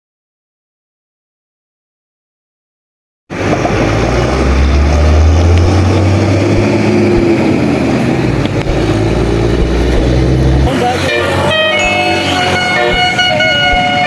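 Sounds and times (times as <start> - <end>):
bus diesel engine rumbling: 3.3 - 14.0
road noise: 3.3 - 14.0.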